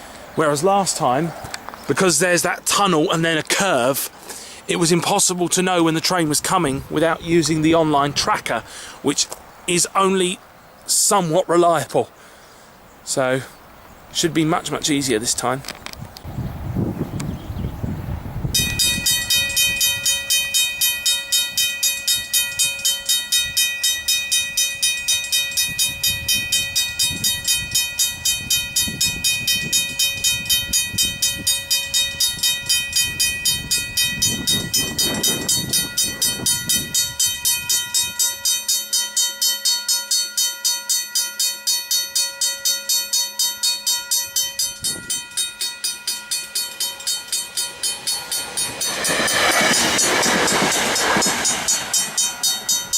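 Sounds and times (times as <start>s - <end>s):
level-crossing bells ringing: 18.6s - 52.9s.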